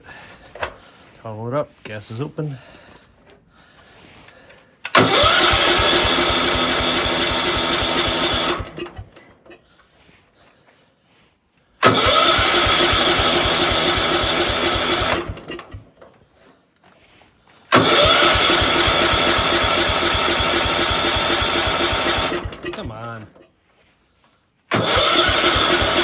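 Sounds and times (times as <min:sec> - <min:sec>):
electric starter cranking engine: 0:04.0 - 0:09.6, 0:11.8 - 0:23.5, 0:24.7 - 0:26.0.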